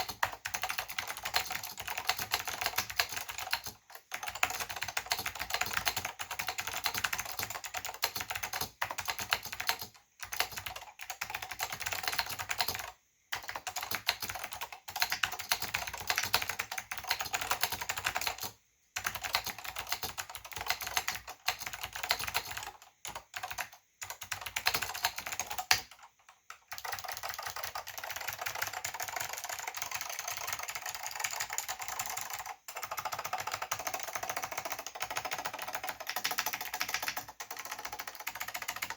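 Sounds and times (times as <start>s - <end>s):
fast clicky keyboard typing: 0.0s - 38.9s.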